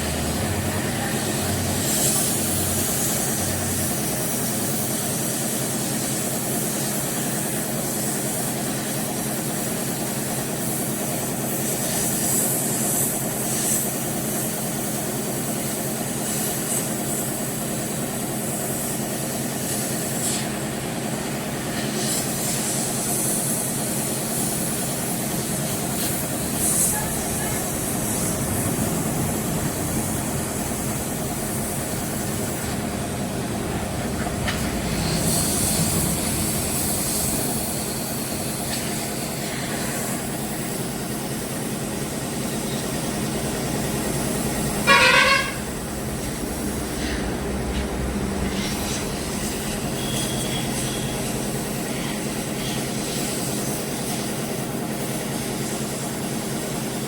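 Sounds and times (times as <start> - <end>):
machine hum: 0.0 - 4.0, 24.9 - 39.6, 42.0 - 52.7
hiss: 0.0 - 57.0.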